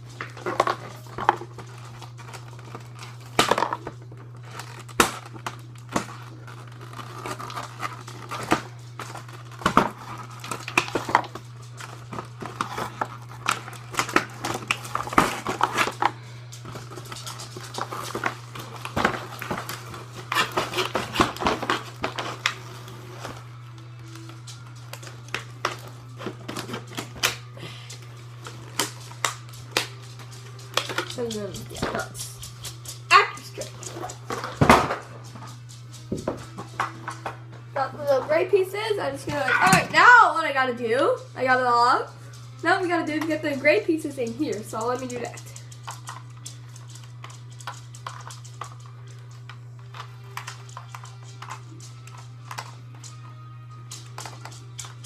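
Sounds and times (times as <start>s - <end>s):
plastic and cardboard crinkling: 0.0s - 40.2s.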